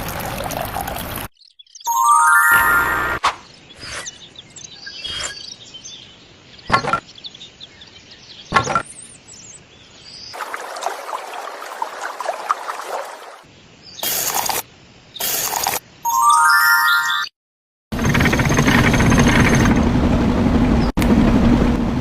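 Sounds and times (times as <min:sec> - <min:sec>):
faint bird chirps: 0:03.4 - 0:10.4.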